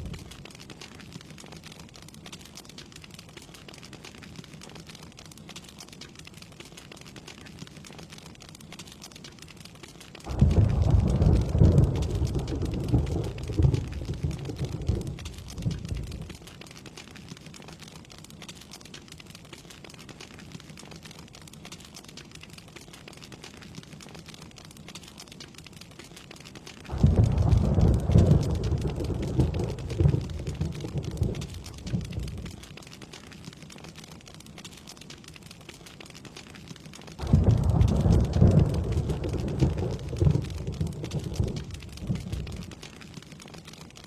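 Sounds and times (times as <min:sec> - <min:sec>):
rain pattering: 0:00.0 - 0:44.0
thunder rumbling: 0:10.3 - 0:16.6, 0:26.9 - 0:32.8, 0:37.2 - 0:42.9.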